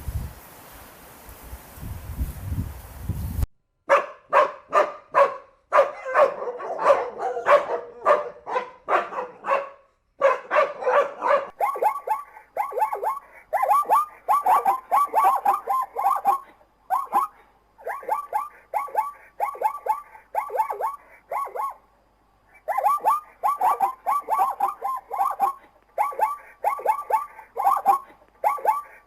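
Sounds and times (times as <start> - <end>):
wind noise: 0.0 - 0.5, 1.3 - 3.5
dog barking: 3.9 - 21.8, 22.5 - 29.0
dog yelping: 3.9 - 21.9, 22.5 - 29.0.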